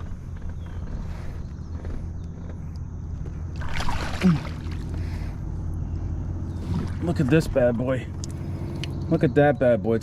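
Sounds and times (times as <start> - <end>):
low hum of water and wind: 0.0 - 10.0
water splashing: 3.5 - 5.2, 6.6 - 7.5.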